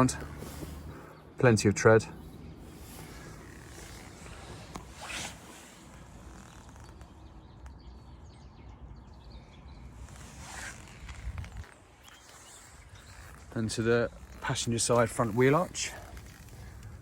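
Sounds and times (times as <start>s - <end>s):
faint outdoor background: 0.0s - 17.0s
brief rustling scuff: 3.0s - 6.1s.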